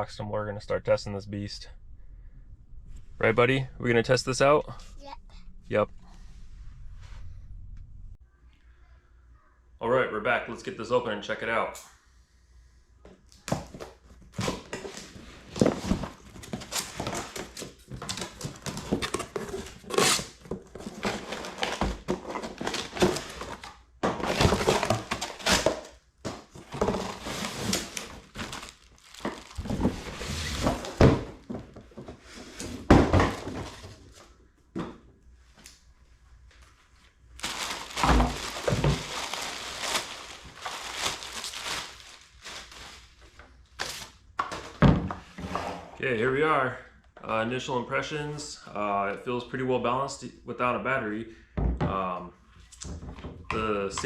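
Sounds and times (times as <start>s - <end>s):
packaging crinkling and rustling: 13.5s - 31.8s, 37.4s - 44.8s.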